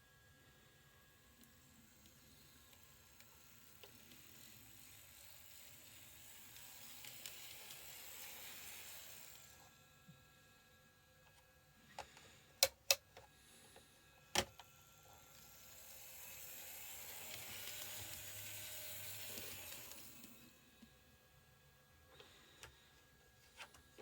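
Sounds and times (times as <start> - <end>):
model train motor and wheels: 0.2 - 9.8, 12.9 - 20.9.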